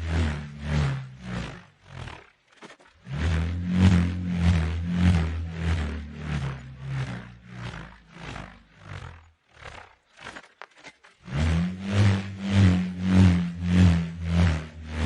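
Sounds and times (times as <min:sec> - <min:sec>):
bullroarer humming roar: 0:03.0 - 0:10.0, 0:11.2 - 0:15.0.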